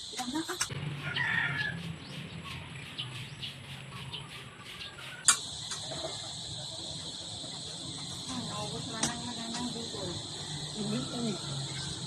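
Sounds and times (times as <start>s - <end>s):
insects droning: 0.0s - 12.0s
birds chirping: 0.1s - 12.0s
sharp click: 5.2s - 5.8s.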